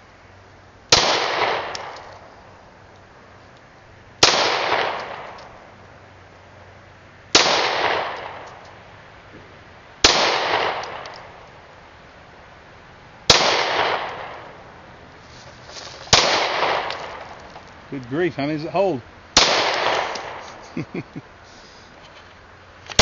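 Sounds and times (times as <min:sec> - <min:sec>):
pistol shots echoing: 0:00.9 - 0:02.2, 0:04.2 - 0:05.4, 0:07.3 - 0:08.5, 0:10.0 - 0:11.4, 0:13.3 - 0:14.6, 0:16.1 - 0:17.3, 0:19.4 - 0:20.4.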